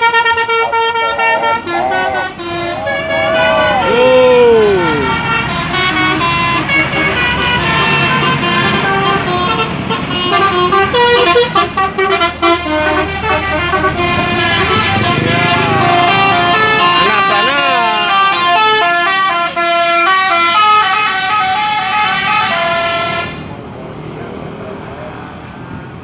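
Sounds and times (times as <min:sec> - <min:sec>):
bus musical horn tune: 0:00.0 - 0:23.4.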